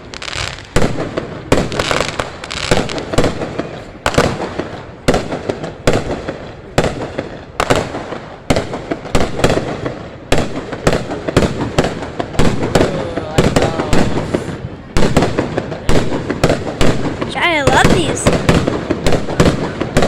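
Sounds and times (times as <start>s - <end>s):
fireworks banging: 0.0s - 20.0s
fireworks crackling: 0.0s - 20.0s.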